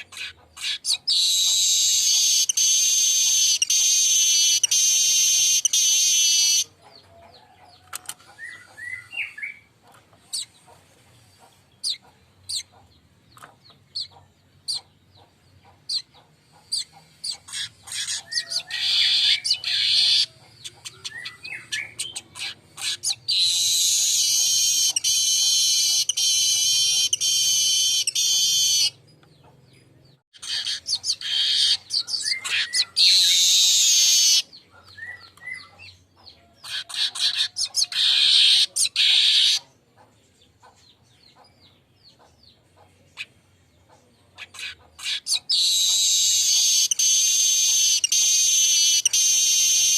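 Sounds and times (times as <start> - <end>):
bird song with ticking and wheezing: 0.0 - 49.9.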